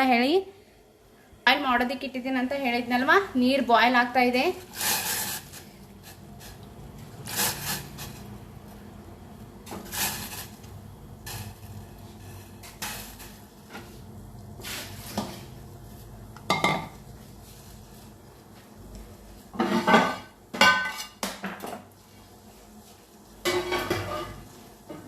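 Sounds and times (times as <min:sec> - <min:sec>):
metal cookware clattering: 0:19.6 - 0:21.8, 0:23.4 - 0:25.0.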